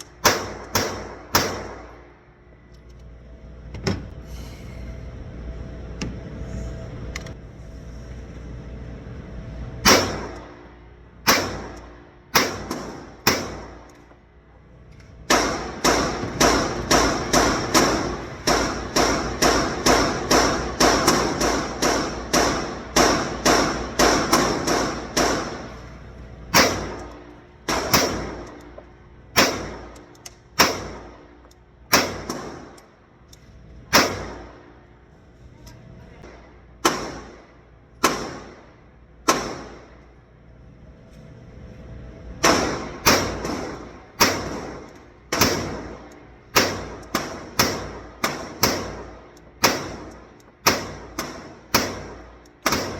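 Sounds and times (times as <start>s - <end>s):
gunshots: 0.2s - 2.0s, 9.8s - 10.4s, 11.2s - 13.8s, 15.2s - 25.8s, 26.5s - 28.6s, 29.3s - 30.0s, 30.6s - 31.2s, 31.9s - 32.8s, 33.9s - 34.6s, 36.2s - 39.9s, 42.4s - 52.9s.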